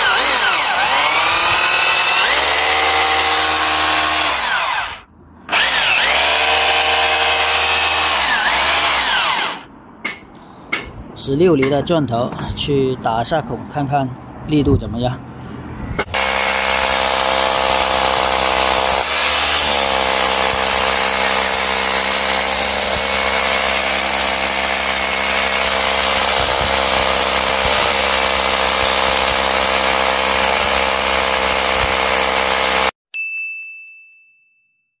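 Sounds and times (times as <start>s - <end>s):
rotary hammer drilling: 0.0s - 9.7s, 16.1s - 33.0s
chime ringing: 33.1s - 35.0s.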